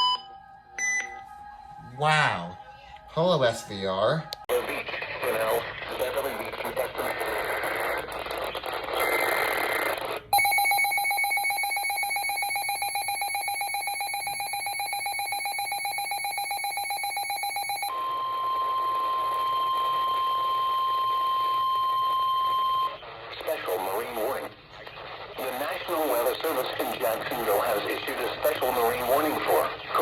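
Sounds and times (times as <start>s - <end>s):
radio hiss: 4.5s - 10.3s, 22.9s - 30.0s
fast-pulsing buzzy beep: 7.6s - 23.0s.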